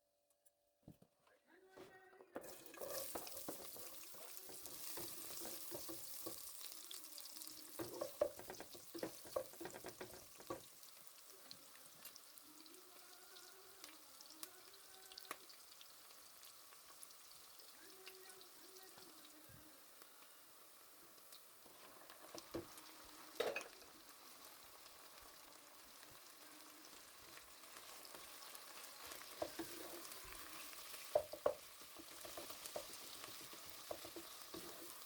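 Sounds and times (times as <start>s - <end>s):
utensil scraping a pan: 2.4s - 6.4s, 27.8s - 35.0s
food sizzling in a frying pan: 2.4s - 35.0s.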